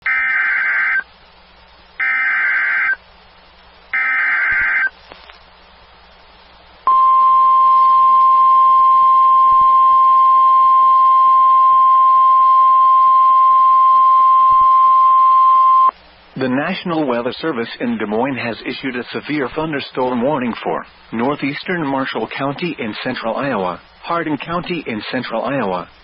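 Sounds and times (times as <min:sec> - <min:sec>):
steady warning alarm tone: 0:00.0 - 0:01.0, 0:02.0 - 0:03.0, 0:04.0 - 0:04.9
digital data tone bursts: 0:04.0 - 0:04.9.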